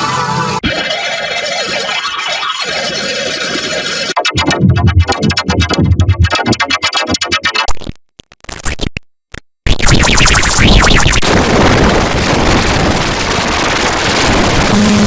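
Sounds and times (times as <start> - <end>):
stuttering low beats: 4.2 - 7.5, 9.8 - 15.0
buzzing synth tone: 9.8 - 15.0.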